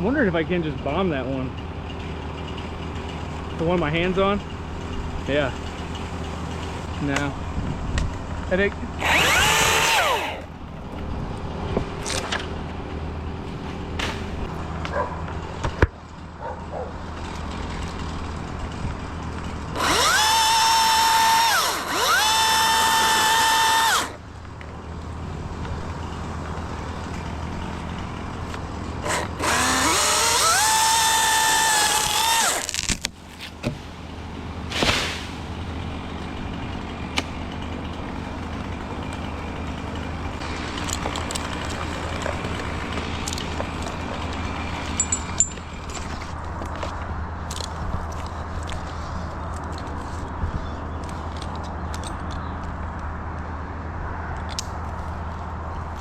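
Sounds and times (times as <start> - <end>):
electric chainsaw motor whine: 9.0 - 10.5, 19.7 - 24.2, 29.0 - 32.9.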